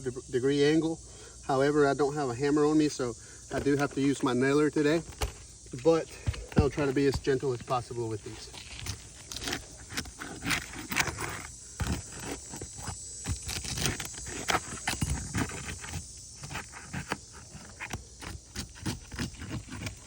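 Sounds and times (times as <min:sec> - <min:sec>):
roof shingles being pried up: 0:03.2 - 0:20.0.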